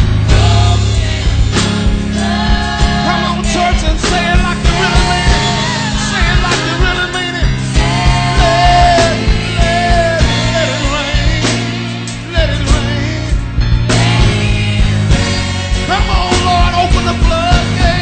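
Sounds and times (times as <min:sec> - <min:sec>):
band with drums and bass: 0:00.0 - 0:18.0.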